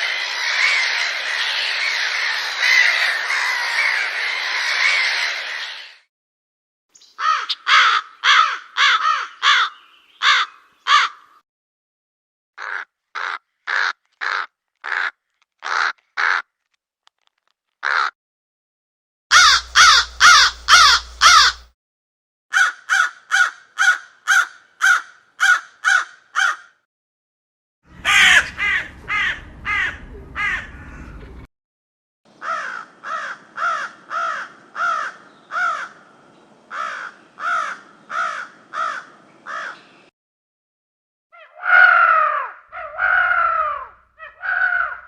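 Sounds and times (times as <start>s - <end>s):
crow cawing: 0.0s - 5.5s, 7.2s - 11.4s, 12.6s - 16.5s, 17.8s - 18.2s, 19.3s - 21.7s, 22.5s - 26.8s, 28.0s - 31.0s, 32.4s - 36.1s, 36.7s - 39.8s, 41.4s - 45.0s
noisy bird call: 0.0s - 6.1s, 7.0s - 11.4s, 19.3s - 21.7s, 32.4s - 36.1s, 36.7s - 40.1s, 41.4s - 45.0s.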